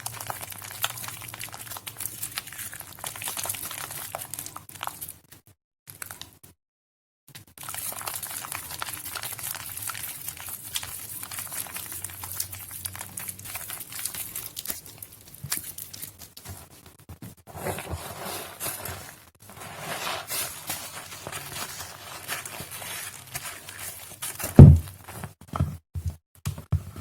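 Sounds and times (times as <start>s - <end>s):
wet soap squished by hand: 0.0s - 5.0s.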